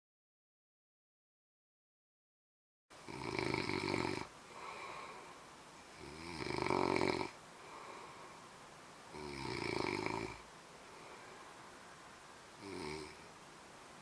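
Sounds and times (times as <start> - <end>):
man snoring with buzzing: 3.0 - 5.2, 5.9 - 8.0, 9.1 - 10.5, 12.6 - 13.3
quiet breathing: 3.0 - 14.0.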